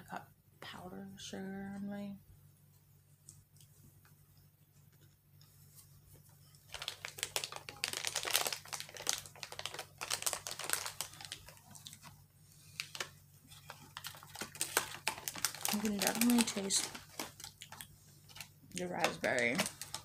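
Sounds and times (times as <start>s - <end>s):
cookie crunching and chewing: 6.5s - 12.2s, 12.8s - 20.0s.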